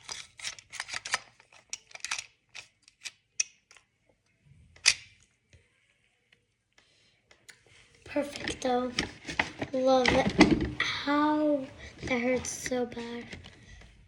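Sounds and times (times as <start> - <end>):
plastic objects clicking: 0.0 - 3.9.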